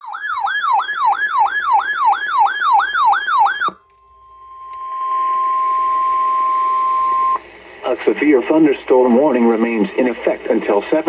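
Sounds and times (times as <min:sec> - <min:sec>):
electronic siren wailing: 0:00.0 - 0:07.4
steady emergency alert tone: 0:00.0 - 0:11.0.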